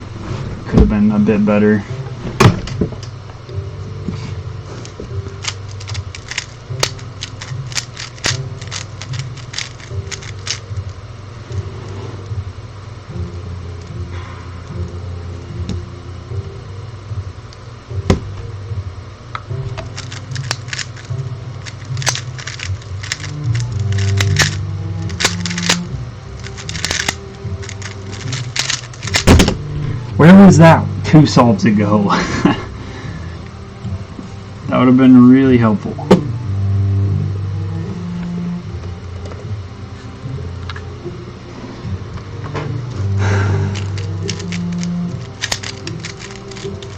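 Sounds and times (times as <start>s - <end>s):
puzzle cube plastic clicks: 5.3s - 10.8s, 19.8s - 29.3s, 43.7s - 46.9s.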